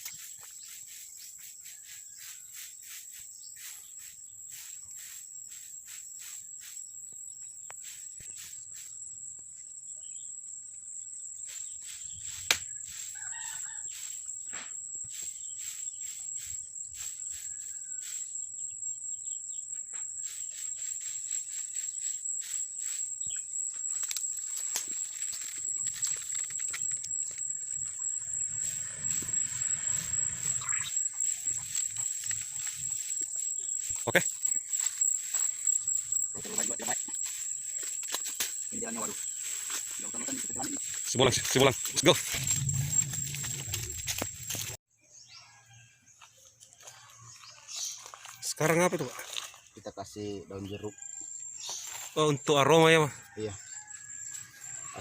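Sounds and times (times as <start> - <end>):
high-pitched insect drone: 11.1 - 44.8, 47.0 - 55.0.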